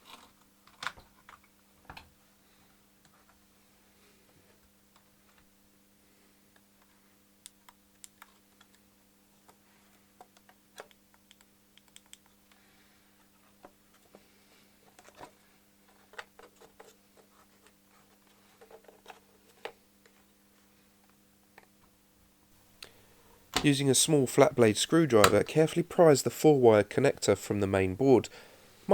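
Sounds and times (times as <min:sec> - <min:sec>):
low electrical hum: 0:00.0 - 0:28.9.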